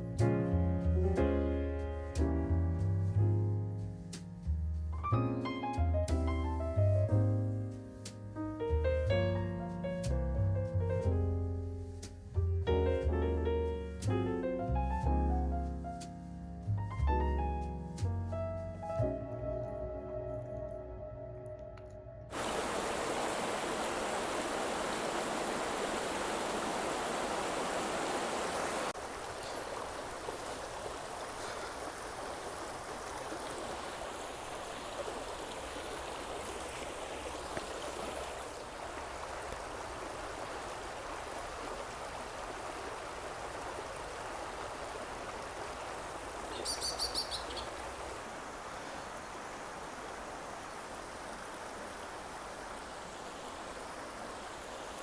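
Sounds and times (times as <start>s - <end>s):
stream running water: 22.3s - 55.0s
high chirps: 46.5s - 47.8s.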